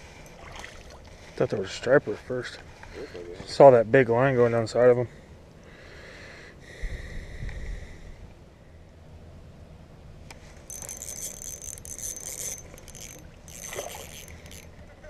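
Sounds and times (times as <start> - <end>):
fishing reel whirring: 10.6 - 14.8.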